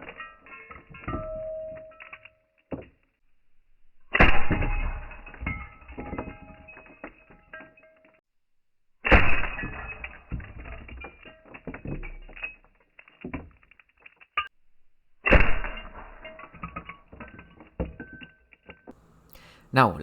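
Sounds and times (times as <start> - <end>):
sharp cracks of glass shattering: 0.0 - 2.3, 4.1 - 7.9, 9.0 - 14.5, 15.2 - 18.8
glass shards clattering and tinkling: 0.0 - 3.0, 4.5 - 8.2, 9.4 - 14.5, 15.7 - 19.0.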